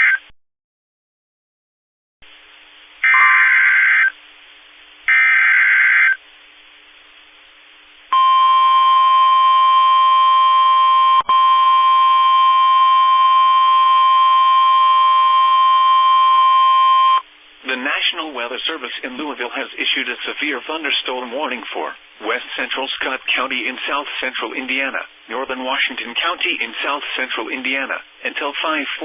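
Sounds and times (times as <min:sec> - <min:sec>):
steady single-pitch alarm tone: 0:08.1 - 0:17.2.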